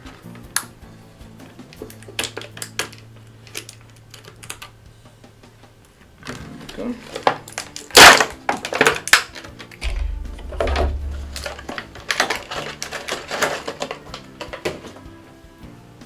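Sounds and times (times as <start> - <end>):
low rumble: 9.8 - 12.6.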